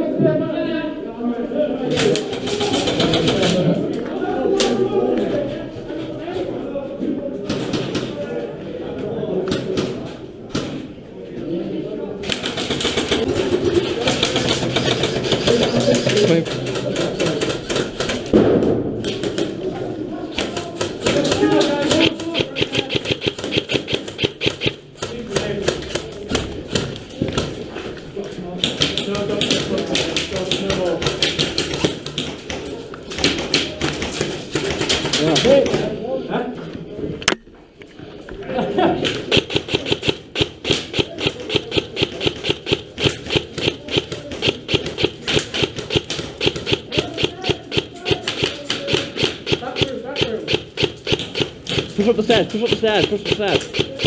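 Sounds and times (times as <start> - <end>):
airsoft guns firing: 12.2 - 19.5, 20.4 - 27.0, 39.0 - 54.0
rapid sharp clicks: 12.3 - 18.3, 20.4 - 27.0, 39.1 - 54.0.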